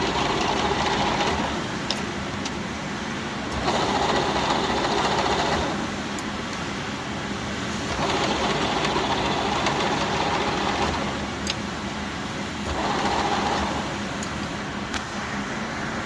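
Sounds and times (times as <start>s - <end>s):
lathe running: 0.0s - 1.9s, 3.5s - 6.0s, 7.8s - 11.4s, 12.6s - 14.2s.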